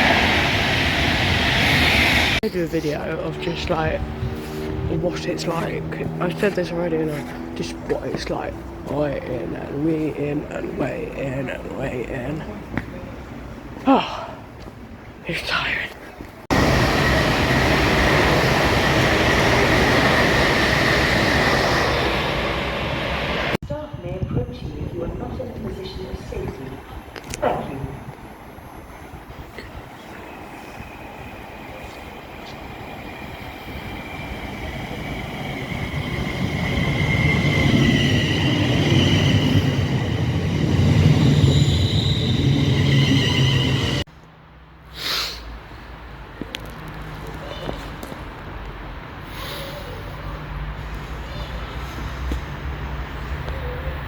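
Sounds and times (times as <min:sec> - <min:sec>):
train wheels rushing on rails: 0:16.5 - 0:23.6, 0:27.2 - 0:44.1.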